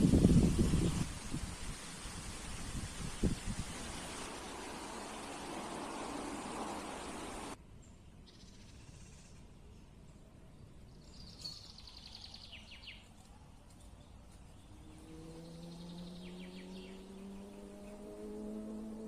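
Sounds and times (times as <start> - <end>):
low outdoor rumble: 2.4 - 8.2
low steady hum rising: 3.4 - 7.6, 14.6 - 19.0.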